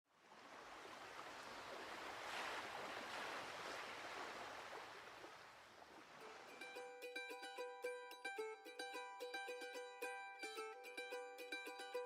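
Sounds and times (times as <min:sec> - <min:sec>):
faint breaking waves: 0:00.1 - 0:08.0.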